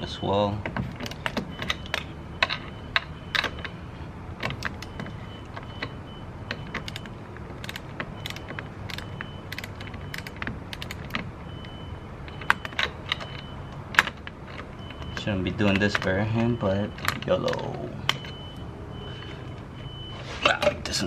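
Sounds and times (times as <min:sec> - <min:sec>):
ratchet wrench clicking: 0:07.6 - 0:11.2.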